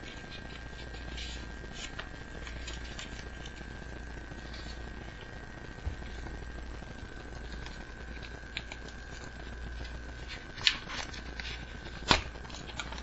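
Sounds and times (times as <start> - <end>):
paper rustling: 0.0 - 3.7, 7.4 - 13.0
paper crackling: 0.0 - 5.3, 6.0 - 13.0.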